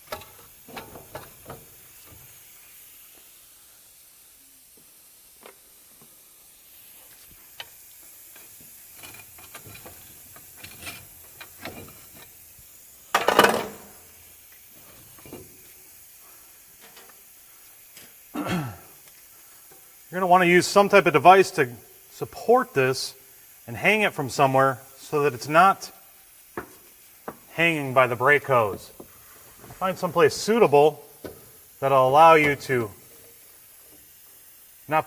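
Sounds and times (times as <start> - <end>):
clicks and knocks of tools: 0.0 - 2.3, 7.5 - 12.3
faint steady hiss: 0.0 - 35.0.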